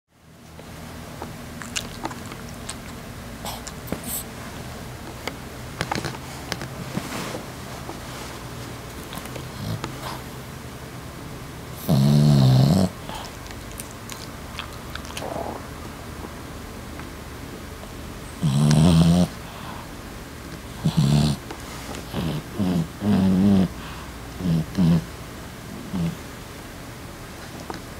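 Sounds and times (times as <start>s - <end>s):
dog snoring: 9.0s - 10.4s, 11.7s - 13.4s, 14.1s - 15.7s, 18.3s - 19.9s, 20.7s - 25.1s, 25.7s - 26.2s.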